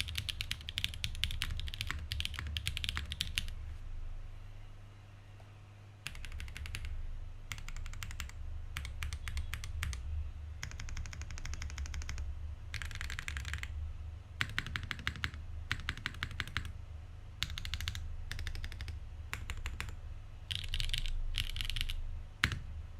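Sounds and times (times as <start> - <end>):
typing on mechanical keyboard: 0.0 - 3.5, 6.1 - 10.0, 10.6 - 13.7, 14.4 - 16.7, 17.4 - 22.6.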